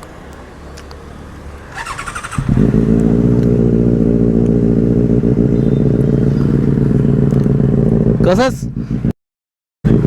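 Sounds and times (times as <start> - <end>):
motorcycle engine: 1.2 - 9.1.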